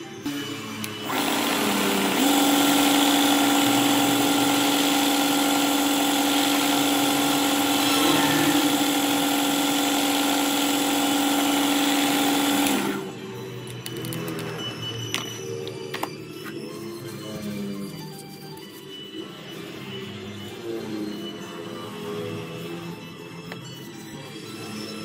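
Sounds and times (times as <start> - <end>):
electric power tool motor humming: 0.3 - 13.2.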